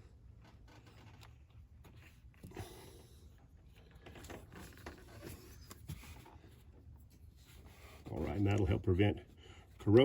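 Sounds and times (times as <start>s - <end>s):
faint clicks and rubbing: 0.3s - 2.5s.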